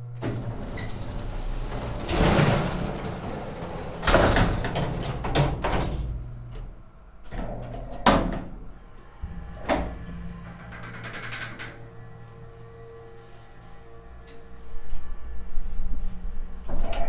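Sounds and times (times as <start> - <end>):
elevator doors sliding and clunking: 0.0 - 11.9
elevator machinery hum: 0.0 - 14.3.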